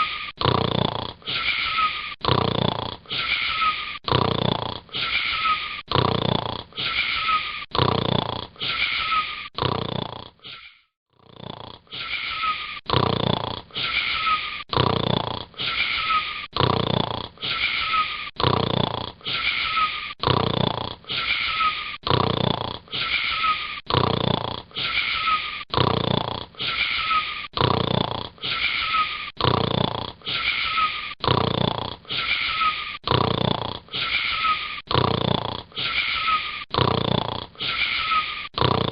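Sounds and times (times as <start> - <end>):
boy snoring: 0.0 - 38.9.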